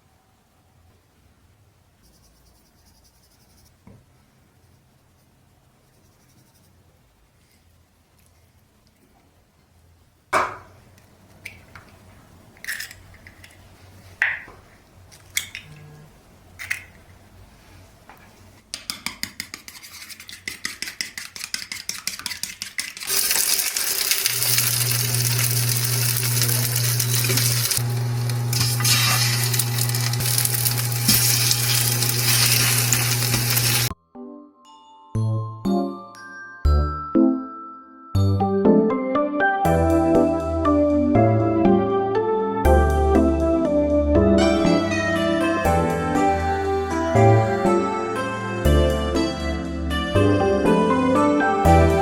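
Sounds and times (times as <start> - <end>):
whisking in a bowl: 19.0 - 33.9
utensils clinking on dishes: 19.7 - 27.8, 28.5 - 33.9
food sizzling in a pan: 23.1 - 33.9.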